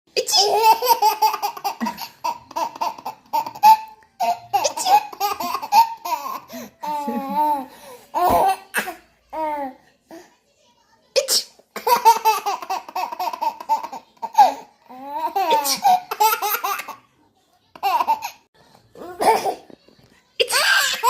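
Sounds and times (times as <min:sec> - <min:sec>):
baby laughing: 0:00.2 - 0:09.0, 0:11.8 - 0:17.1, 0:17.7 - 0:18.5.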